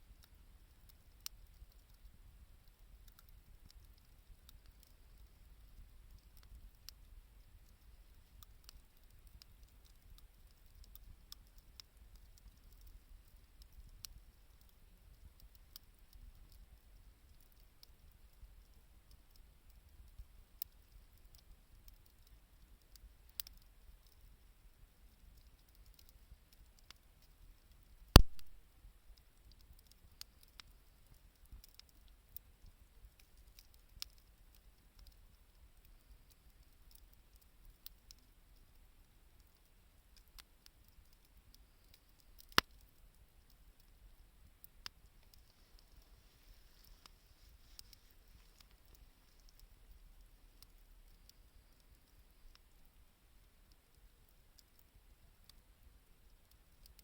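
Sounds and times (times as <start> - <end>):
campfire crackling: 0.0 - 57.0
sharp loud pop: 28.2 - 28.5.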